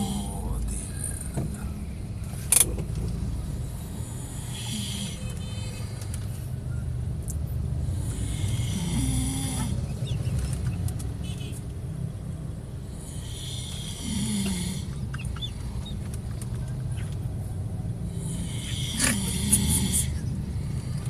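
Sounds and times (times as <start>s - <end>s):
man snoring: 0.0s - 1.1s, 3.8s - 5.3s, 7.8s - 9.9s, 12.8s - 15.0s, 18.1s - 21.0s
steady low rumble: 11.9s - 21.0s.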